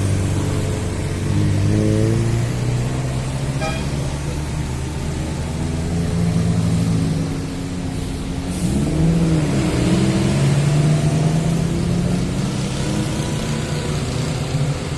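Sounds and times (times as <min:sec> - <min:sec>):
bus engine running: 0:00.0 - 0:14.9
faint high tone: 0:03.6 - 0:04.1.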